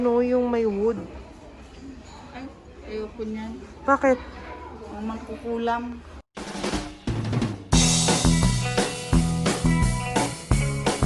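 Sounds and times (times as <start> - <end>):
drum hits: 6.4 - 11.0
full band playing: 6.4 - 11.0
bass line: 7.8 - 11.0.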